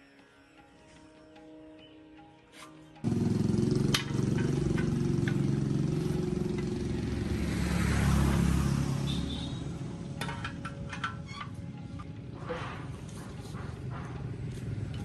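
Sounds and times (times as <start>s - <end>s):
diesel engine running: 3.0s - 15.0s.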